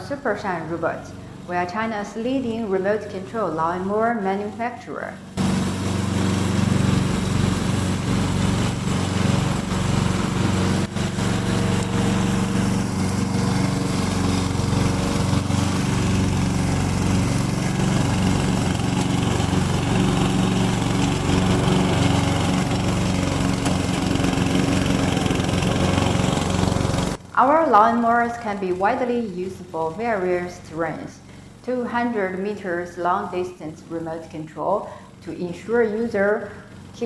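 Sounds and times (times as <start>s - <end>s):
petrol engine running: 5.2s - 27.8s.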